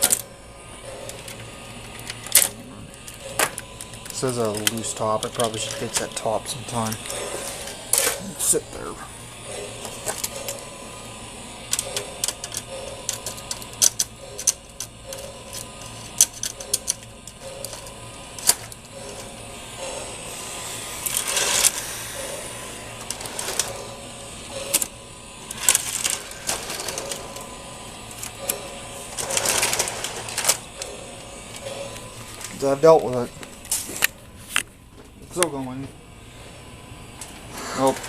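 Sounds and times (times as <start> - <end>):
faint steady whine: 0.0 - 38.0
model train wheels clacking on rails: 0.9 - 8.6, 11.6 - 33.8.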